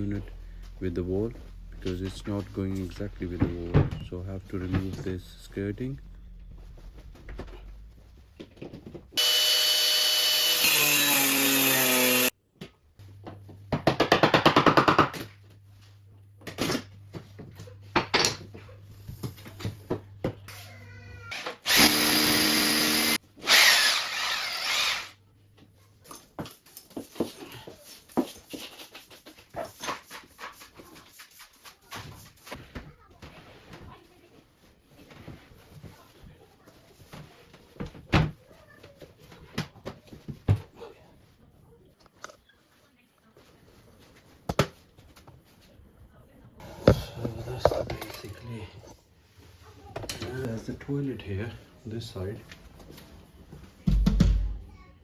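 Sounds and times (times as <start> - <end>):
handheld power tool running: 9.2 - 12.3, 21.6 - 25.2.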